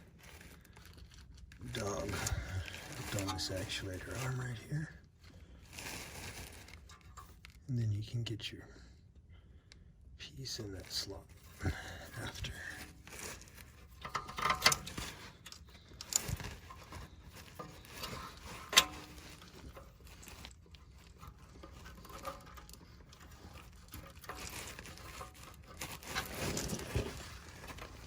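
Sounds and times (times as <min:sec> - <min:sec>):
metal parts scraping and clicking: 0:01.7 - 0:04.5, 0:12.4 - 0:28.0.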